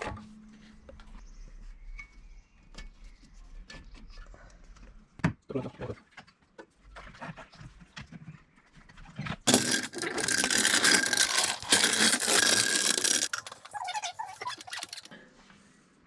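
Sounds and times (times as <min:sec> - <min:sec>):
tools clicking and tapping: 0:09.5 - 0:15.1.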